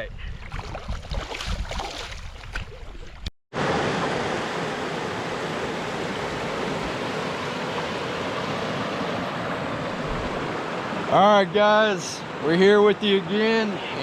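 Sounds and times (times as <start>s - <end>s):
wind buffeting microphone: 0.0s - 3.3s
river water flowing: 0.5s - 13.4s.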